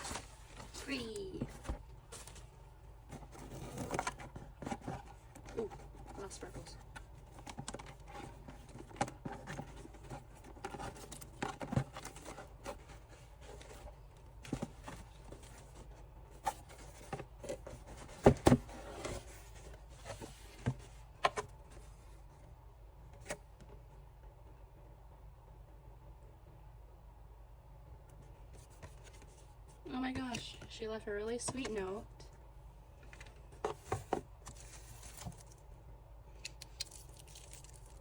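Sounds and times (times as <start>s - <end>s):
paper rustling and crinkling: 0.0s - 21.9s, 33.0s - 35.6s.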